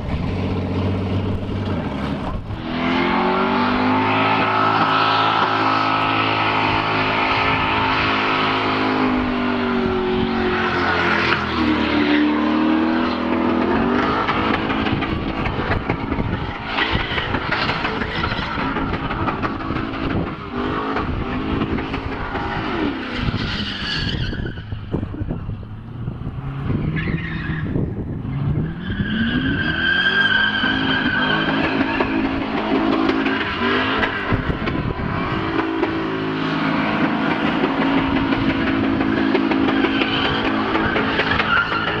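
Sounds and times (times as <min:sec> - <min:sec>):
car engine revving hard: 0:00.0 - 0:24.1, 0:26.0 - 0:42.0
tyres squealing: 0:28.6 - 0:42.0.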